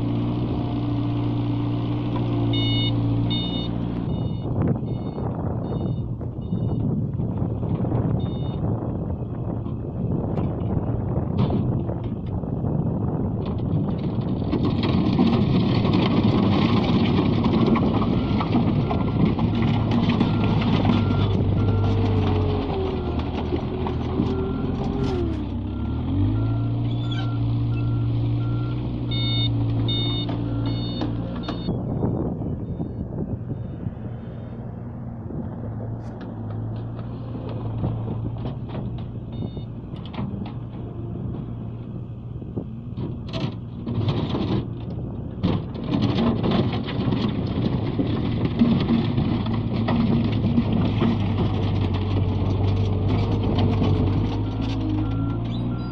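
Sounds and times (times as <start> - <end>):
loader engine rattling and clanking: 0.0 - 55.9
faint repeating beep: 2.5 - 6.8, 8.2 - 8.6, 27.8 - 31.8, 39.3 - 39.7.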